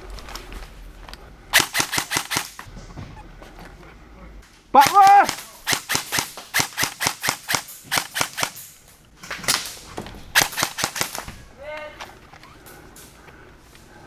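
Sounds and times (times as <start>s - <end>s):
airsoft guns firing: 1.6s - 2.7s, 4.8s - 8.7s, 9.4s - 11.4s
person shouting: 4.8s - 5.4s.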